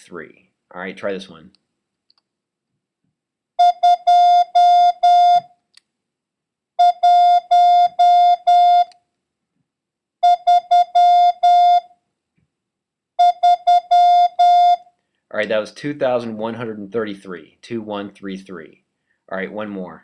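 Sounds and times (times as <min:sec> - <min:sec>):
morse code beeps: 0:03.6 - 0:05.5, 0:06.8 - 0:08.9, 0:10.2 - 0:11.9, 0:13.2 - 0:14.8.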